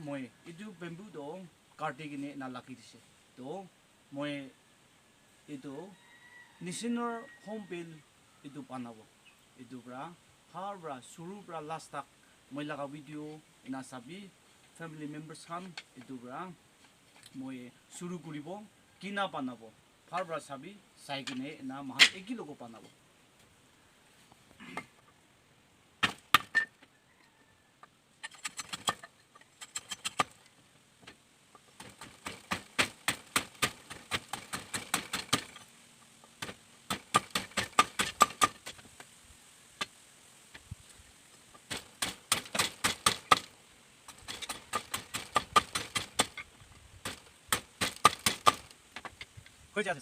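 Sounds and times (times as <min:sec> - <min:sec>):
blade striking bamboo: 0:26.0 - 0:26.7, 0:28.2 - 0:30.4, 0:31.8 - 0:35.7, 0:36.3 - 0:38.8, 0:41.5 - 0:43.5, 0:44.1 - 0:49.3.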